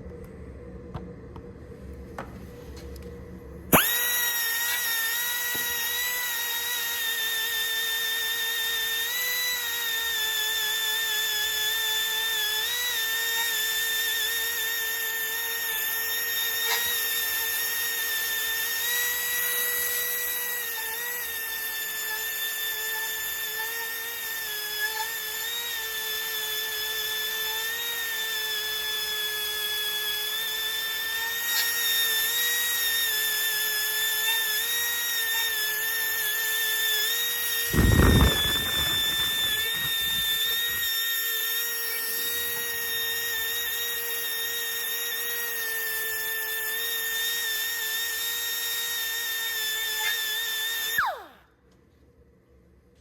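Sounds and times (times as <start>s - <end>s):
boring machine whine: 0.0s - 21.4s, 37.4s - 43.6s, 50.6s - 51.4s
loud thump: 37.7s - 40.8s.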